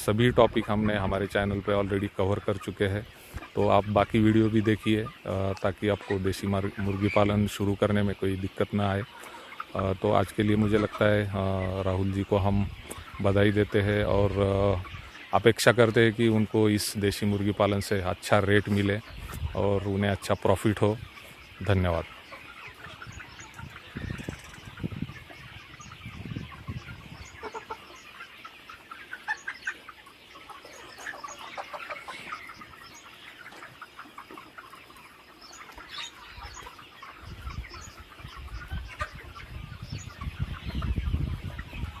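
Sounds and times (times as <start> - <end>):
chickens clucking: 0.0 - 42.0.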